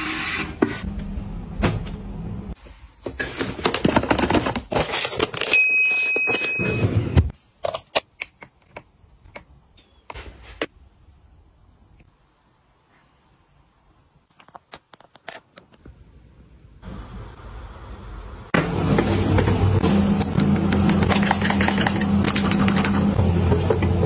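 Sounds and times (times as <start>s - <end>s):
packaging rustling: 3.0s - 6.5s
plastic containers clattering: 3.0s - 6.8s.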